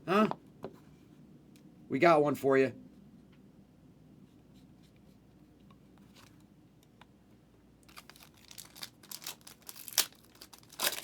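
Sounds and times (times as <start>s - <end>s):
plastic wrapper crinkling and tearing: 7.8s - 11.0s.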